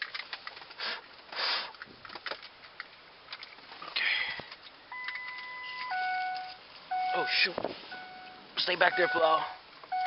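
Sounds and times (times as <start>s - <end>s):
handling clicks and scuffs: 0.0s - 6.9s.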